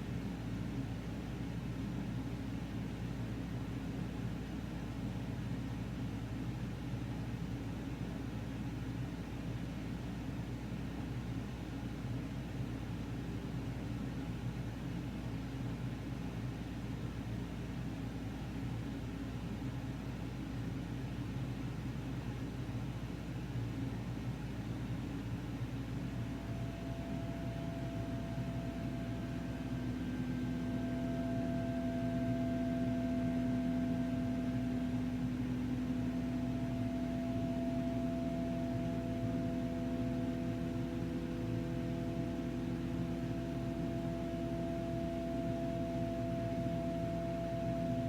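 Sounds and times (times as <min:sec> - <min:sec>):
low hiss: 0:25.8 - 0:48.0
soft ambient drone music: 0:25.8 - 0:48.0.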